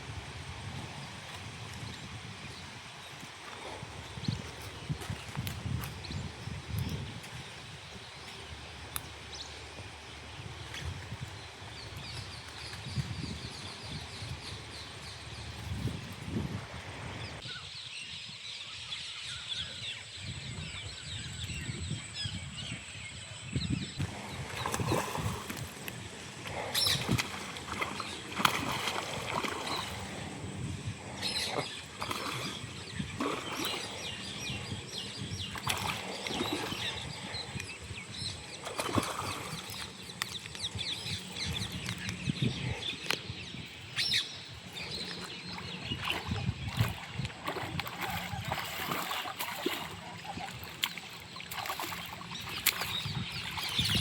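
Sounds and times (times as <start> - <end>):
birds chirping: 1.0 - 54.0
flapping and splashing: 24.0 - 30.4, 31.1 - 37.3, 38.6 - 42.0, 44.8 - 54.0.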